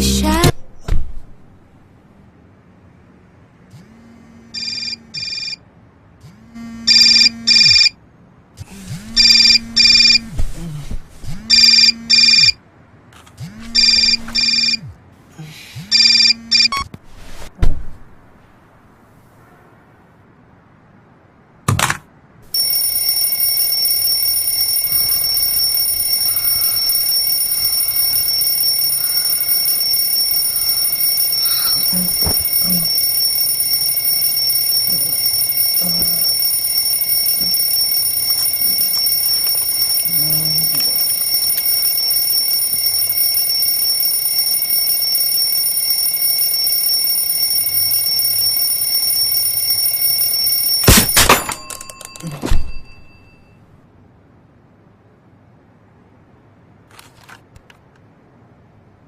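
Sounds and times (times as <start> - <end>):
alarm clock ringing: 22.5 - 53.5.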